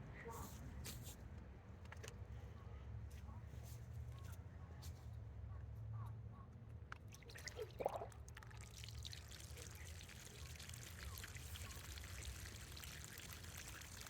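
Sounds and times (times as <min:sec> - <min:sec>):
fountain water trickling: 0:07.2 - 0:14.0.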